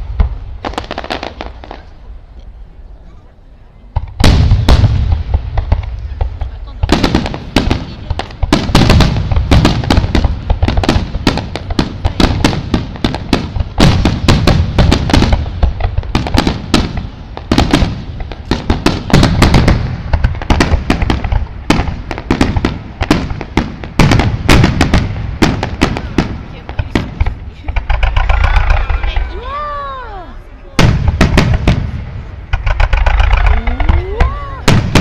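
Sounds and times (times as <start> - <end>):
firework bangs: 0.0 - 2.0, 3.9 - 35.0
deep rumbling booms: 4.0 - 35.0.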